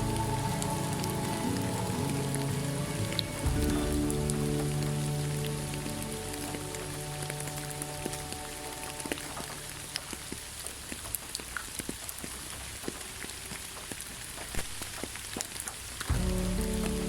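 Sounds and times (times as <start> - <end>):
soft music with held notes: 0.0 - 10.1, 16.1 - 17.0
steady rain: 0.0 - 17.0.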